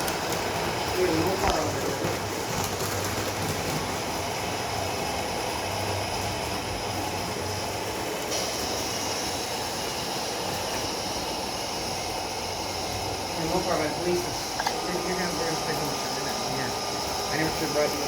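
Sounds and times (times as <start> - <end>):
model train rolling hum: 0.0 - 18.0.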